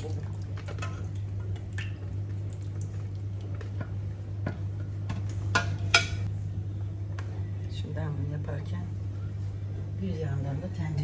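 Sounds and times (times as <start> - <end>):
utensils tapping cookware: 5.5 - 6.3.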